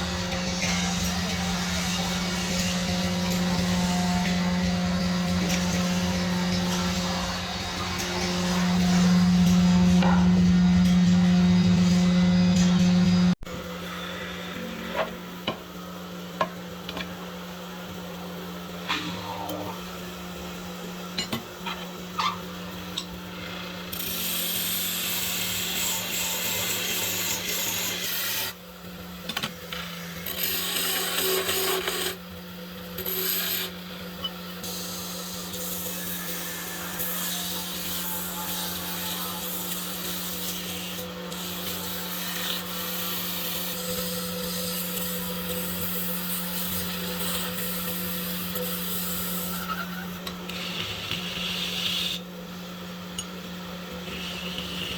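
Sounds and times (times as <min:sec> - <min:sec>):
steady low hum: 0:00.0 - 0:23.9.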